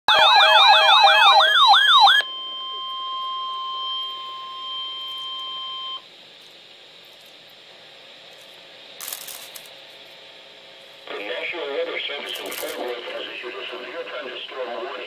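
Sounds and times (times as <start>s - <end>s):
sweeping siren-like wails: 0.1s - 6.0s
high-pitched alarm tone: 0.1s - 6.1s.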